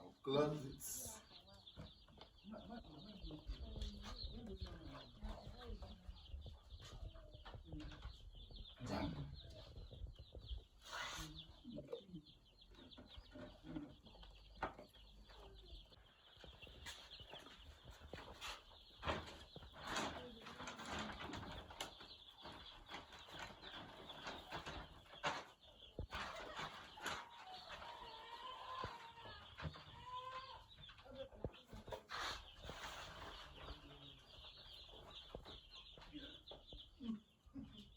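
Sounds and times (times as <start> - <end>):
chicks cheeping: 0.0 - 37.9.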